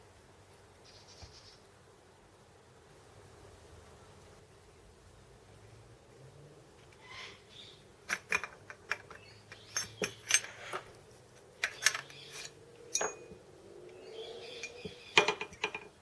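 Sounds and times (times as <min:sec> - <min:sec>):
metal parts and tools clinking: 0:08.1 - 0:11.0, 0:11.6 - 0:13.4, 0:14.5 - 0:15.9.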